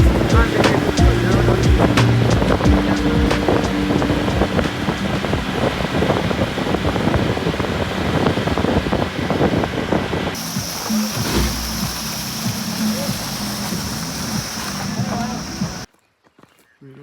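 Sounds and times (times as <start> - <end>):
low rumble: 0.0 - 8.9
vehicle road noise: 0.0 - 15.9
wind on microphone: 0.0 - 15.9.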